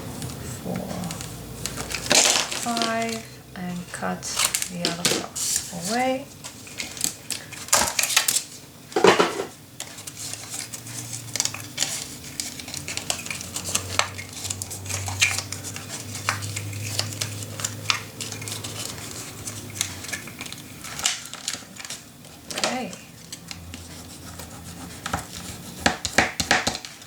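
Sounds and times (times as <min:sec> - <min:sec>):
scissors cutting paper: 0:00.2 - 0:03.3, 0:04.0 - 0:08.5, 0:09.8 - 0:27.0
tools knocking on table: 0:09.0 - 0:09.5.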